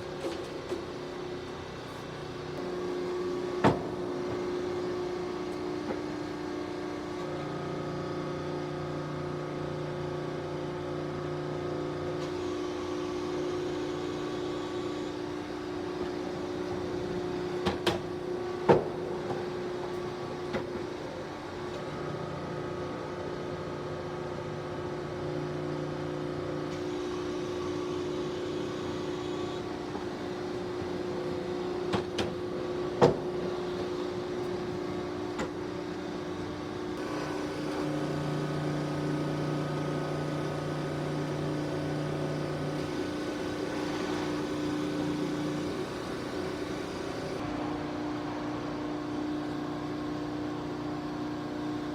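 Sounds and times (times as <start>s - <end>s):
industrial machinery humming: 0.0s - 51.9s.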